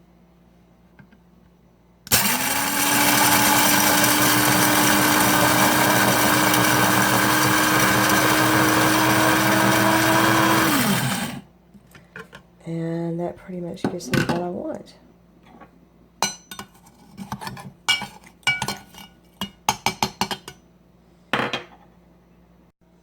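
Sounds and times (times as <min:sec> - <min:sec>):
coffee grinder motor whine: 0:02.1 - 0:11.4.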